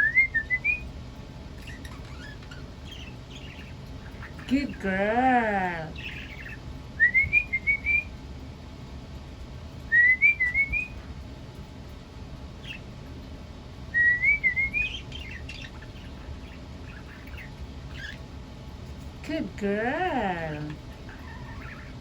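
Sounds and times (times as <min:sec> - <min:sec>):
bird whistling phrase: 0:00.0 - 0:00.8, 0:06.0 - 0:08.1, 0:09.9 - 0:11.0, 0:14.0 - 0:15.9.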